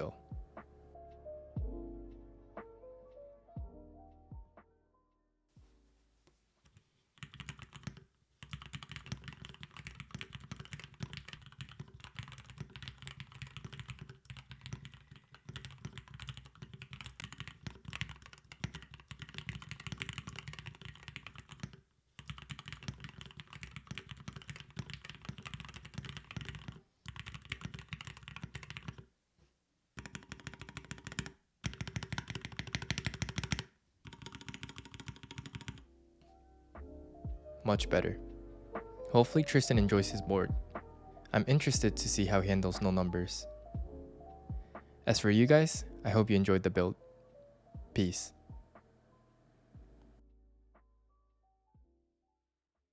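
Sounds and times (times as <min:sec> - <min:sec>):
fast typing on mechanical keyboard: 0:06.7 - 0:29.0, 0:30.0 - 0:35.8.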